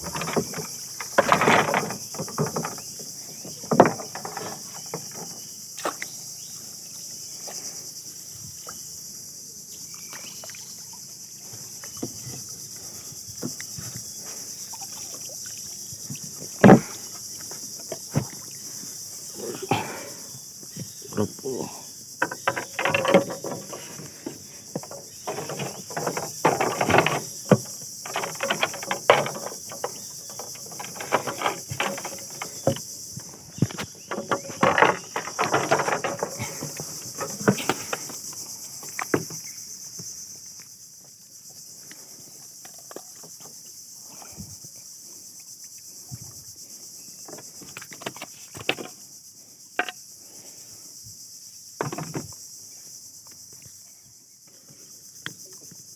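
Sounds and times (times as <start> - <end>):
knocks and rustling: 0.0 - 6.0, 15.8 - 18.5, 22.2 - 40.1, 47.3 - 49.0, 51.8 - 52.4
insects chorus: 0.0 - 55.9.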